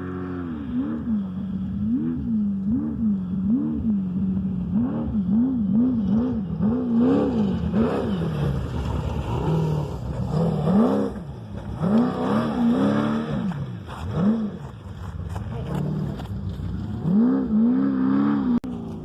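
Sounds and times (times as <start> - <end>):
engine revving: 0.0 - 19.0.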